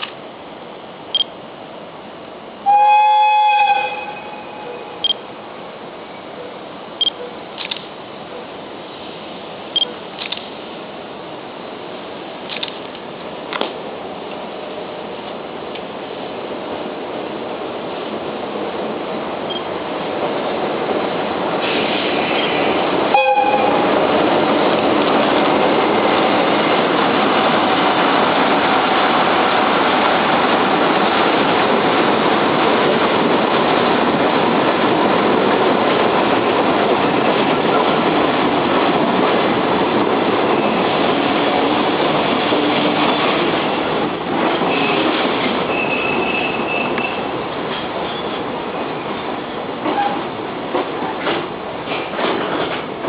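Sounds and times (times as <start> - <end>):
freight train wagons rolling: 19.5 - 53.0
wheels clattering over rails: 21.6 - 53.0.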